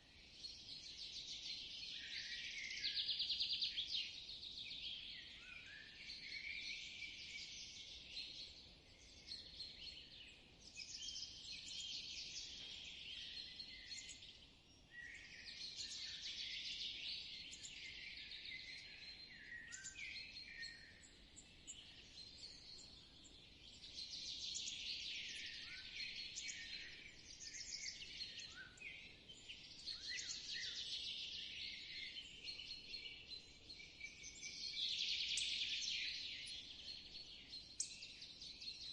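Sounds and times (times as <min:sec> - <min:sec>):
songbirds trilling: 0:09.0 - 0:38.9.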